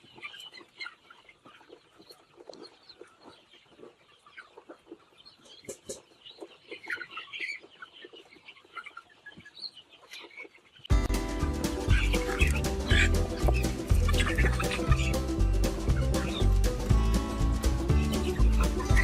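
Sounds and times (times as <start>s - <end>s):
chickens clucking: 0.0s - 19.0s
background music with steady beat: 10.9s - 19.0s.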